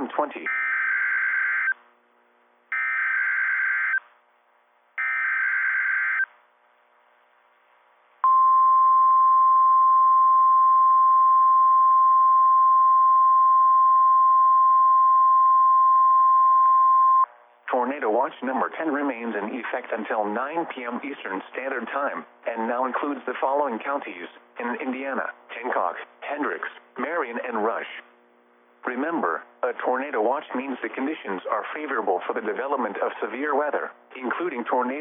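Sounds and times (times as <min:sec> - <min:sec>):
faint radio hiss: 0:00.0 - 0:08.2, 0:17.3 - 0:35.0
steady alarm tone: 0:02.7 - 0:04.0, 0:05.0 - 0:06.3.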